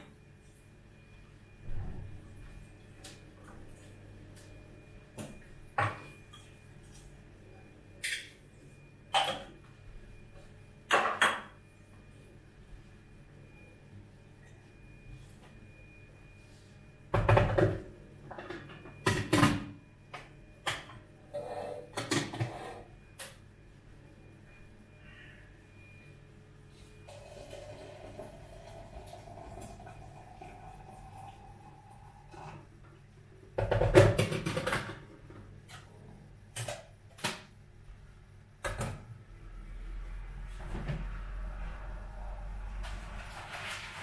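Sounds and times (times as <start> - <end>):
objects knocking and clattering: 33.6 - 35.5.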